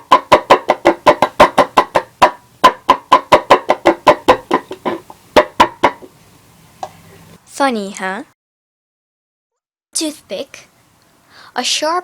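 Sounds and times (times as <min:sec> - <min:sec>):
cluck cup clucking: 0:00.0 - 0:06.1.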